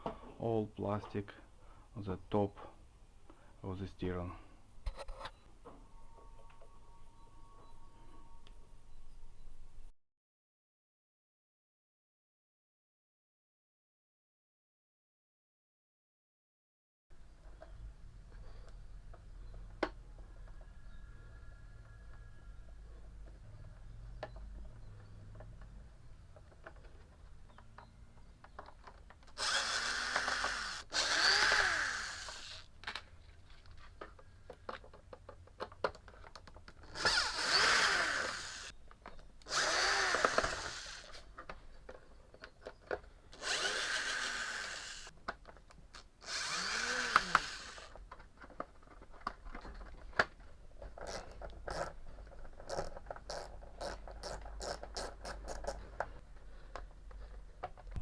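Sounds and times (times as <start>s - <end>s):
power drill spinning: 29.4s - 32.7s, 36.8s - 38.8s, 39.4s - 41.2s, 43.3s - 45.1s, 46.2s - 48.0s.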